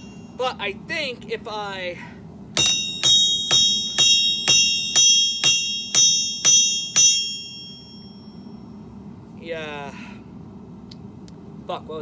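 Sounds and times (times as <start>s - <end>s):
hammer ringing on anvil: 0.0s - 0.4s, 2.6s - 8.6s.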